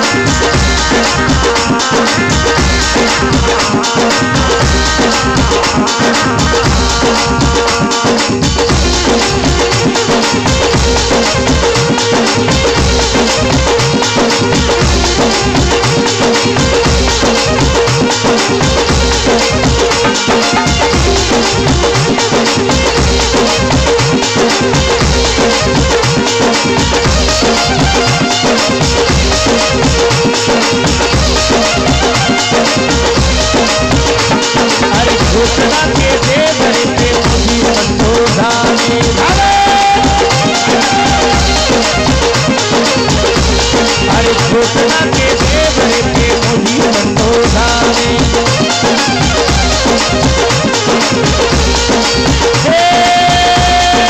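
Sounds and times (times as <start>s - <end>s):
folk melody line: 0.0s - 54.0s
rattle percussion: 0.0s - 54.0s
steady drum beat: 0.0s - 54.0s.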